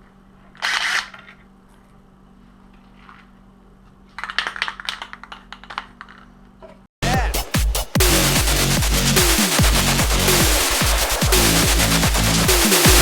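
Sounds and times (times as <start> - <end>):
electronic dance music: 7.0 - 13.0.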